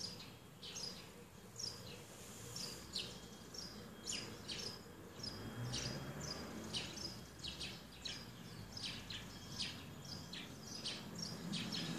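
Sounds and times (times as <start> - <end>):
steady background hiss: 0.0 - 5.5
small birds chirping: 0.0 - 11.9.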